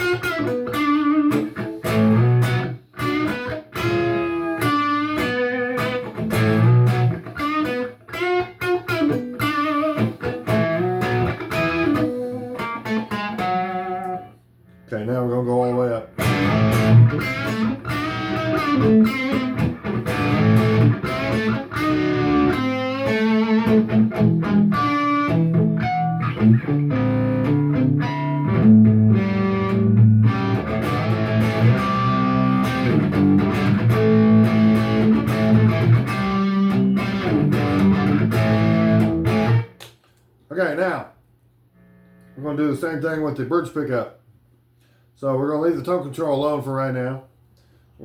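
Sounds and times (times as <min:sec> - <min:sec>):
electric guitar chords and riffs: 0:00.0 - 0:14.4, 0:16.1 - 0:39.8.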